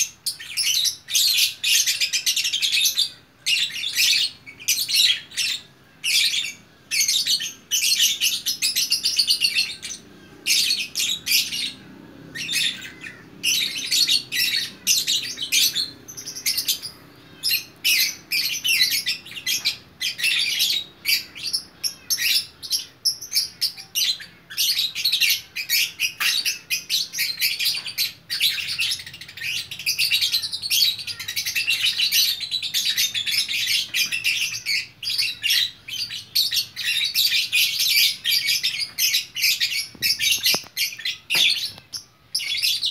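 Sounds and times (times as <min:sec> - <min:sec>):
lovebird chirping song: 0:00.0 - 0:42.9.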